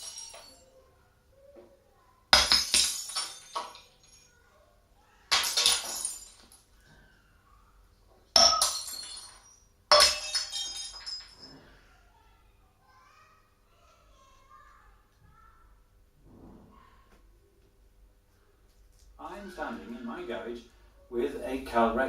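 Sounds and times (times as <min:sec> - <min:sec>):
glass smashing: 0:00.0 - 0:00.6, 0:02.3 - 0:04.3, 0:05.3 - 0:06.7, 0:08.3 - 0:11.6
glass pieces clinking: 0:00.0 - 0:00.7, 0:02.4 - 0:04.3, 0:05.3 - 0:06.7, 0:08.3 - 0:11.6.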